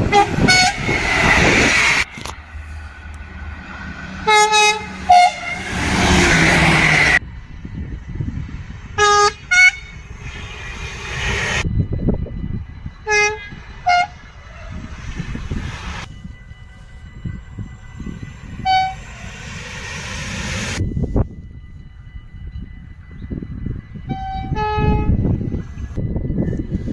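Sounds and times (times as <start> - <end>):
two-tone train horn: 0.0 - 2.8, 4.1 - 7.2, 9.0 - 10.0, 13.0 - 14.9, 18.6 - 19.2, 24.1 - 25.3
passing train noise: 0.0 - 26.9.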